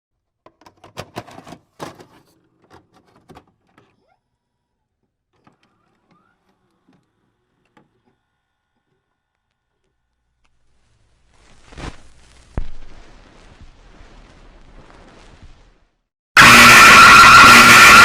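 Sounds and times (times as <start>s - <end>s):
mechanical clicks and clunks: 0.5s - 4.0s.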